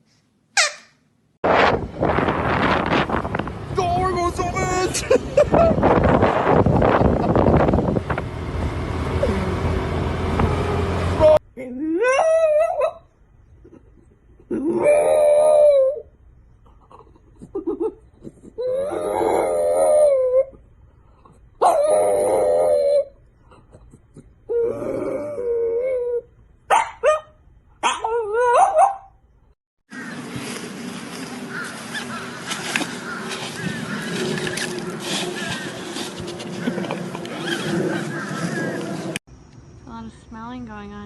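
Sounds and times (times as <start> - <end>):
loud rushing noise: 1.4 - 11.2
dog howling: 14.7 - 16.1, 18.6 - 20.6, 21.6 - 23.2.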